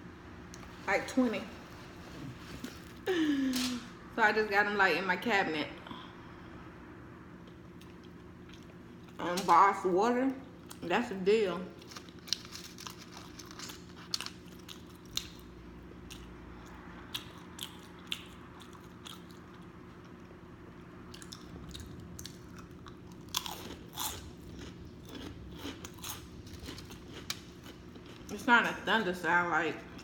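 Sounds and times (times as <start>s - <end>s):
person chewing food: 7.4s - 9.2s, 11.8s - 20.4s, 21.1s - 28.3s.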